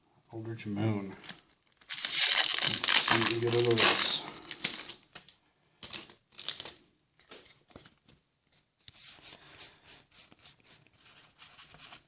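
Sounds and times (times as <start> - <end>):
foil wrapper crinkling and tearing: 1.2 - 6.8.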